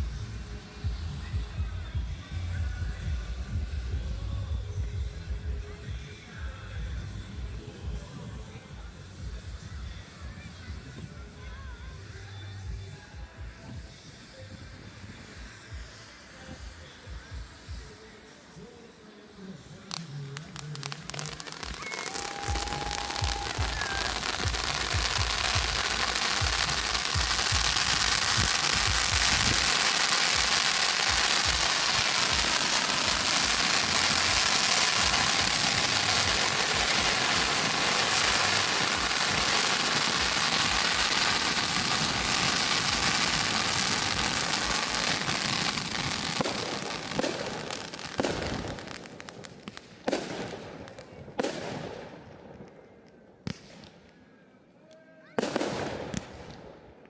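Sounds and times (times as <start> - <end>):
fireworks crackling: 0.0 - 54.2, 55.3 - 57.0
fireworks booms: 19.9 - 52.8, 53.4 - 54.1, 55.4 - 57.0
fireworks bangs: 19.9 - 54.1, 55.4 - 57.0.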